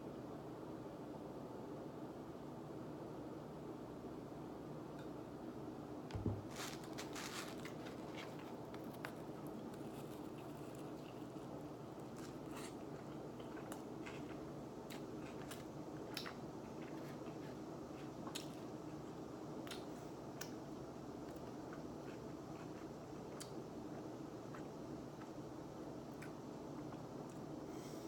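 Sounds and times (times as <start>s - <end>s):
steady low hum: 0.0s - 28.0s
person chewing food: 6.5s - 25.4s.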